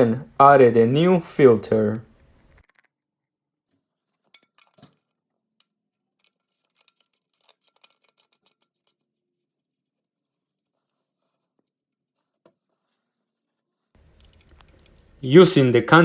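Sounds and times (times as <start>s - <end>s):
faint clicks and clinks: 14.0s - 15.2s.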